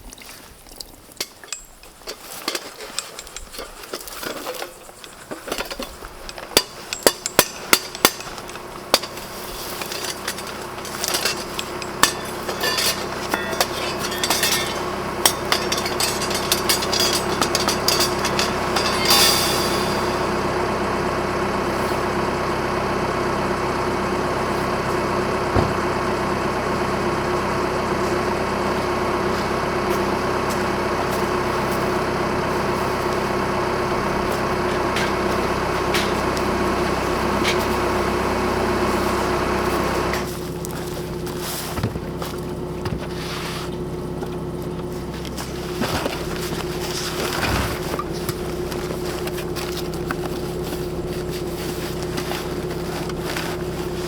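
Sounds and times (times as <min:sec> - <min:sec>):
engine-like drone: 0:04.6 - 0:54.0.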